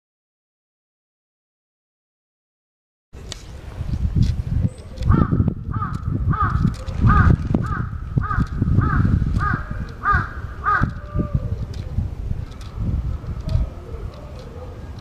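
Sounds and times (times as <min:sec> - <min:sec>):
crow cawing: 0:05.1 - 0:11.5.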